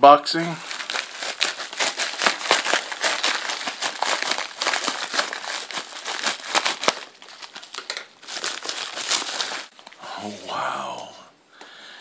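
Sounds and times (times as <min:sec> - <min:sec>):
packaging crinkling and rustling: 0:00.4 - 0:10.0.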